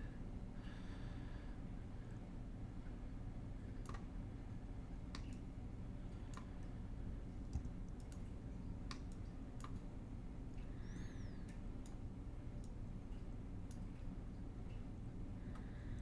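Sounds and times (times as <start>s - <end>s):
low steady hum: 0.0s - 16.0s
computer mouse clicks: 7.5s - 8.2s.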